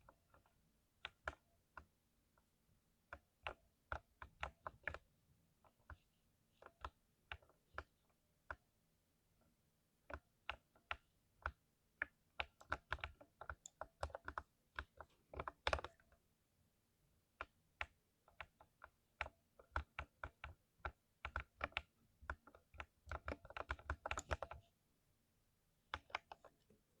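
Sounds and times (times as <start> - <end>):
typing on mechanical keyboard: 10.1 - 16.0, 17.4 - 24.6.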